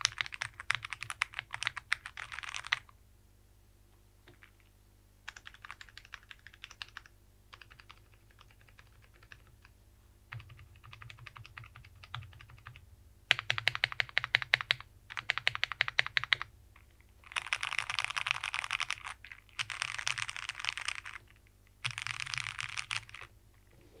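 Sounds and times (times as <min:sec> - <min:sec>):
mechanical keyboard typing: 0:00.0 - 0:02.9, 0:05.3 - 0:09.7, 0:10.3 - 0:16.5, 0:17.2 - 0:21.2, 0:21.8 - 0:23.3.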